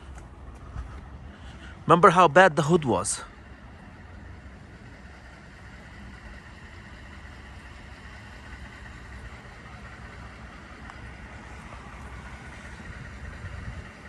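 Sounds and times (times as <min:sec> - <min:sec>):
vehicle engine idling: 0:00.0 - 0:14.0.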